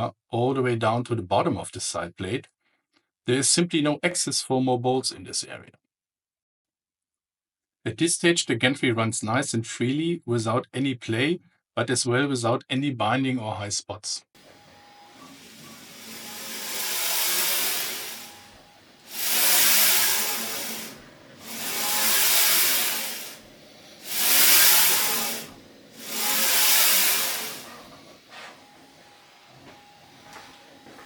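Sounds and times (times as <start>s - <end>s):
bearing blocks rolling on rails: 14.4s - 30.8s.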